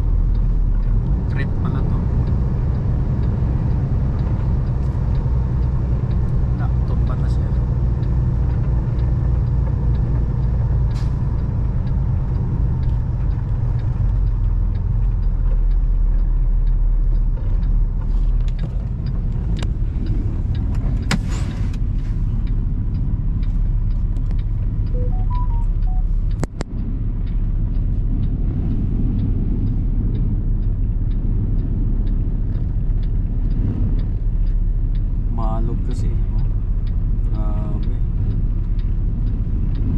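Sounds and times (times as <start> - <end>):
diesel engine humming: 0.0 - 39.9
short electronic beeps: 24.9 - 26.3.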